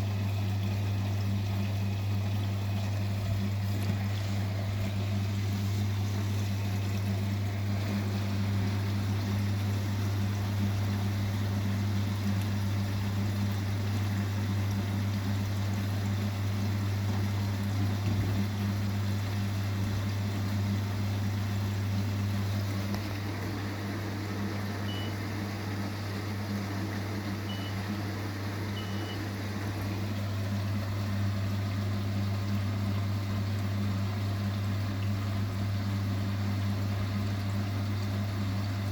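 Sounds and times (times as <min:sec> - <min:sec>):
washing machine running: 0:00.0 - 0:38.9.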